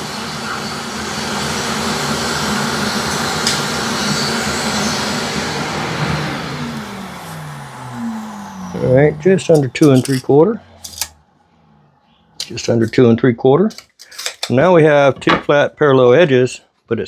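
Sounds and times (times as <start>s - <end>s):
table saw running and winding down: 0.0s - 11.2s, 12.4s - 13.0s, 13.7s - 14.6s.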